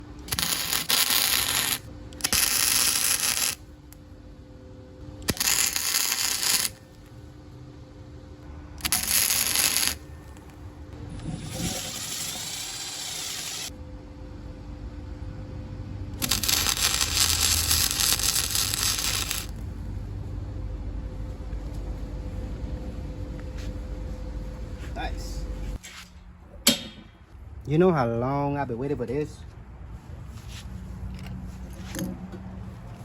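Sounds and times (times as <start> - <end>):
welding crackling and hissing: 0.0 - 3.6, 5.2 - 7.1, 8.8 - 10.6, 11.4 - 13.8, 16.2 - 19.6.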